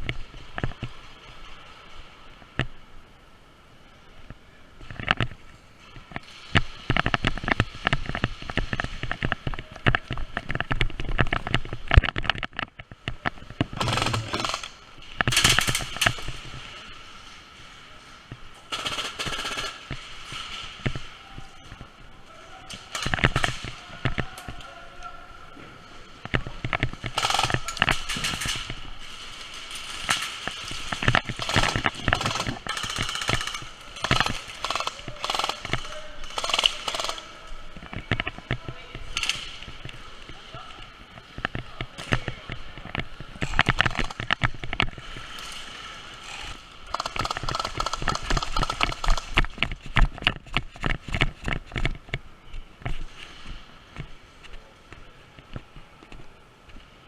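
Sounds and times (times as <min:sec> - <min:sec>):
airsoft guns firing bursts: 0:13.8 - 0:15.8, 0:18.7 - 0:19.9, 0:30.7 - 0:37.3, 0:46.9 - 0:49.4.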